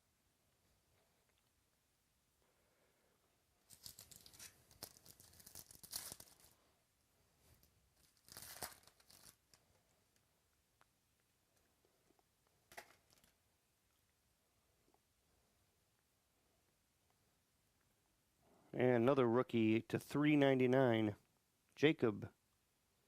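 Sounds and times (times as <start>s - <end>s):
plastic packaging crinkling and tearing: 3.7s - 6.6s, 7.5s - 9.8s.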